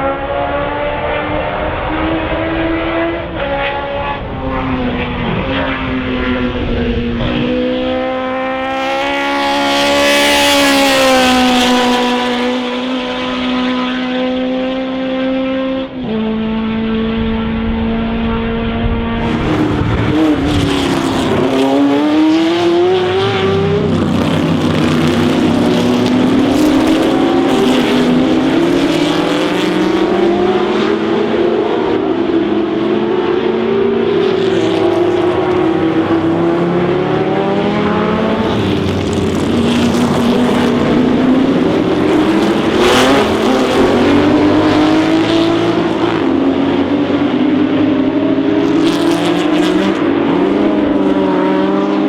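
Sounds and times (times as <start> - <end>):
racing car engine accelerating: 0.0 - 52.0.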